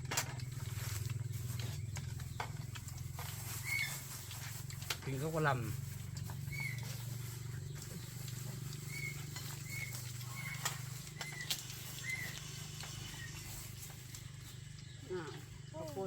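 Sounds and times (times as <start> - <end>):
steady low hum: 0.0 - 16.0
parrot chirping: 3.2 - 4.3, 6.3 - 15.0.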